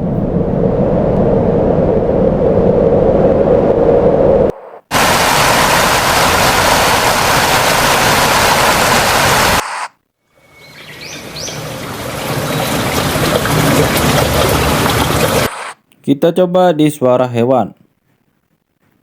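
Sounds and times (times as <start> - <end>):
rumbling noise: 0.0 - 9.6, 11.2 - 15.8
loud steady static hiss: 4.4 - 12.1, 14.6 - 19.0.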